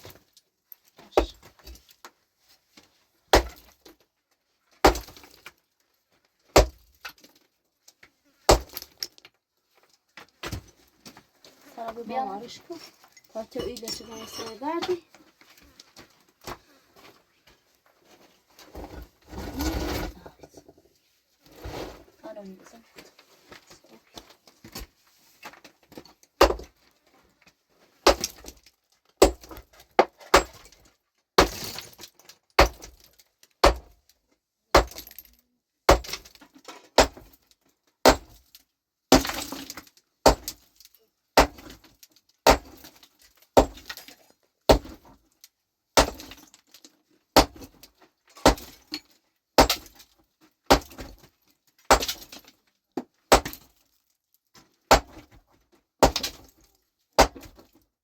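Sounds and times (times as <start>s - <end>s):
hammer cracking on rock: 34.8s - 35.3s, 50.7s - 51.1s, 53.3s - 53.6s, 56.0s - 56.5s.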